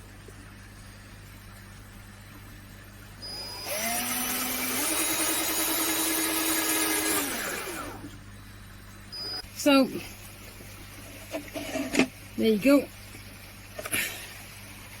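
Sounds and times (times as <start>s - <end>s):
power drill drilling: 3.2s - 8.1s.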